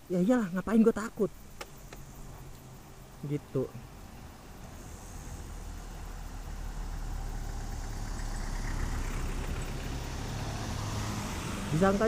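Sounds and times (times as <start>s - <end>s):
vehicle engine running: 1.4s - 12.0s.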